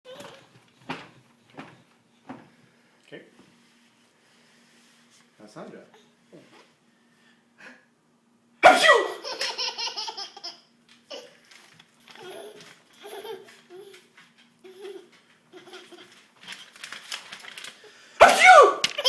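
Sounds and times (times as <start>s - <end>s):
man sneezing: 8.6s - 9.2s, 18.2s - 18.8s
toddler laughing: 8.9s - 11.4s, 12.1s - 16.2s.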